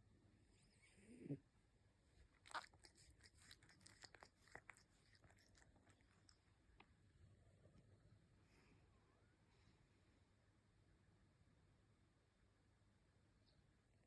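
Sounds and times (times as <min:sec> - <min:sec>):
faint irregular mouth clicks: 0:02.5 - 0:06.4.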